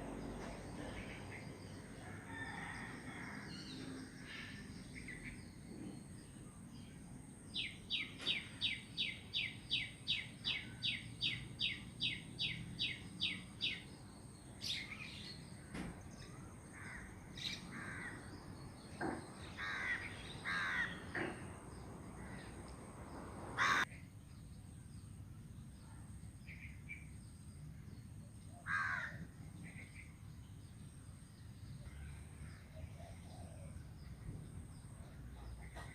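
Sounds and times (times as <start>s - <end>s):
birds calling: 15.7s - 23.9s.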